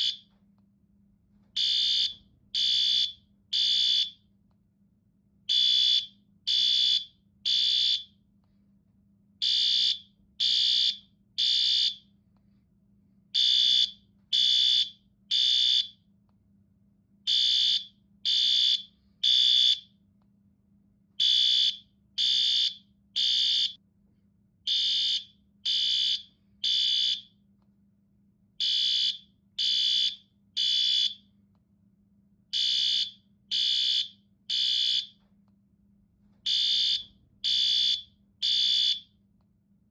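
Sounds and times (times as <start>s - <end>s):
fire alarm beeping: 0.0s - 0.4s, 1.5s - 4.3s, 5.5s - 8.2s, 9.4s - 12.1s, 13.4s - 16.0s, 17.3s - 20.0s, 21.2s - 23.8s, 24.6s - 27.4s, 28.6s - 31.3s, 32.6s - 35.2s, 36.4s - 39.2s.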